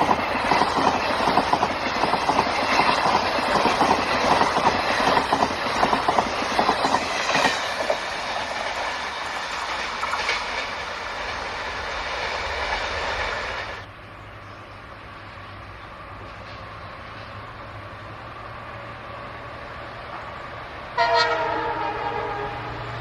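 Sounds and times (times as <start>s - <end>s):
train wheels clicking over joints: 0.0s - 13.8s
train rumbling: 0.0s - 23.0s.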